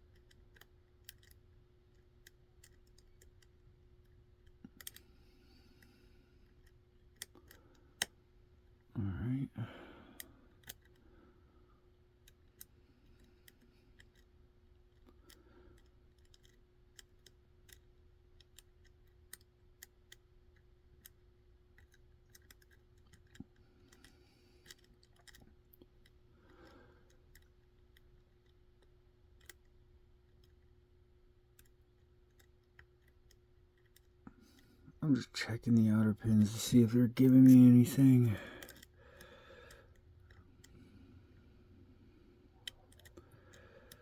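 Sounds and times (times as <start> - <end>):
lock pick clicking in lock: 0.1 - 1.4, 14.9 - 26.2.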